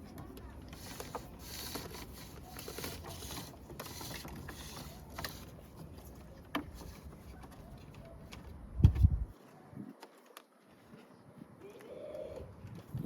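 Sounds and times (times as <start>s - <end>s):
rustling and scraping on plastic trim: 0.0s - 9.3s.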